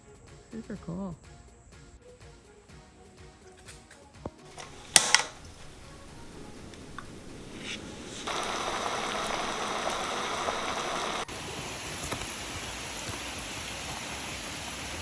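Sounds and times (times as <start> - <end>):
heavy rain pouring: 4.5 - 15.0.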